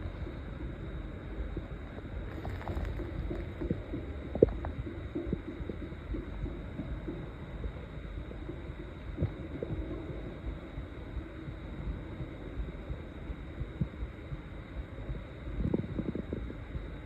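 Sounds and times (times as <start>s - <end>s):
stomach growling: 1.4s - 10.8s, 15.5s - 16.9s.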